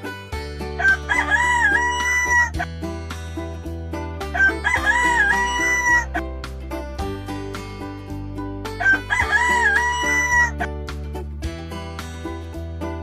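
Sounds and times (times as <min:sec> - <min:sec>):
background music: 0:00.0 - 0:13.0
rooster crowing: 0:00.8 - 0:02.6, 0:04.4 - 0:06.2, 0:08.8 - 0:10.7.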